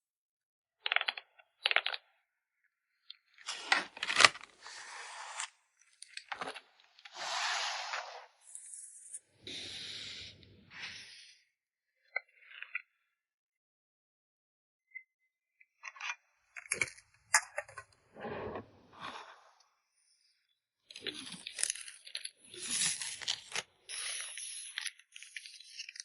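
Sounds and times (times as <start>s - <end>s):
plastic and paper packaging crinkling: 3.4s - 4.9s, 21.0s - 26.0s.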